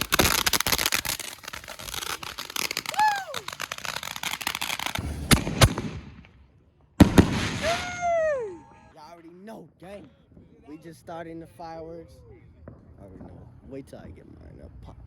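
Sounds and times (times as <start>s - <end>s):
firework bangs: 0.0s - 8.4s
firecrackers crackling: 0.0s - 8.7s.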